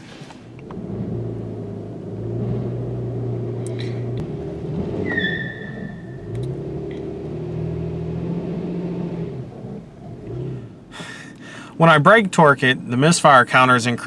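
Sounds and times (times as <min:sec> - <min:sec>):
misfiring car engine running: 0:00.0 - 0:14.0.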